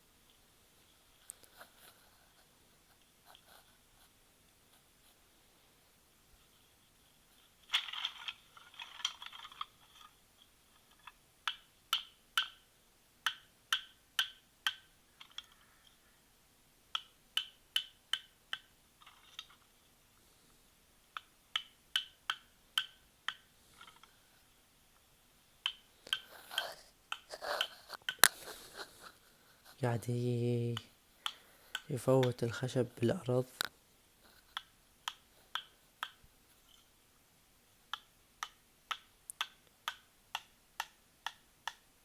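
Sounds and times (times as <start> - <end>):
rustling scrape: 26.3 - 29.8.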